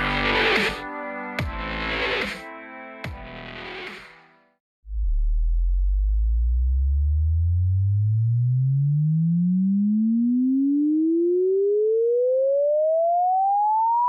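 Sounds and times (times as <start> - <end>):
sine wave tone sweeping upward: 4.9 - 14.0.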